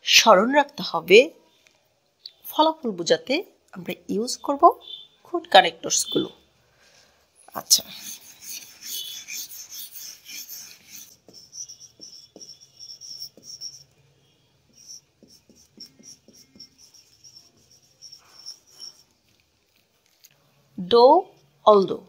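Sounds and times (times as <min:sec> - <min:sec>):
pen scratching on paper: 0:07.5 - 0:14.0, 0:14.7 - 0:20.3
faint high squeak: 0:07.5 - 0:20.2.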